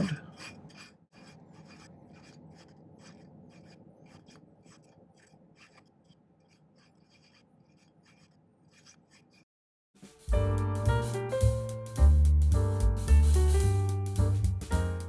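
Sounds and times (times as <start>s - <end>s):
hand file rasping on wire: 0.0s - 9.5s.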